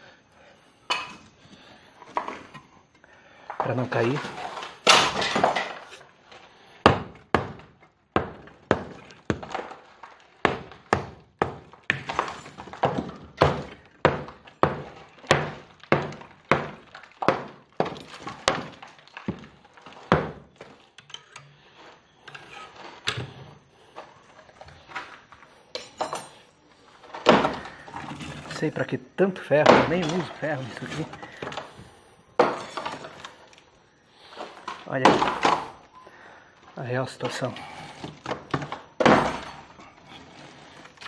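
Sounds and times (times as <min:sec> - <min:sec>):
hammer striking masonry: 0:04.8 - 0:05.7, 0:06.8 - 0:09.8, 0:10.4 - 0:20.8, 0:27.2 - 0:27.9, 0:29.4 - 0:31.6, 0:32.4 - 0:32.9, 0:35.0 - 0:35.8, 0:38.0 - 0:39.8.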